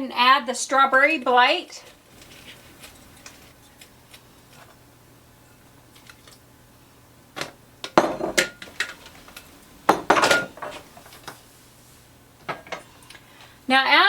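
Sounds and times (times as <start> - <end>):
metal utensils clinking on pot: 9.9 - 10.8.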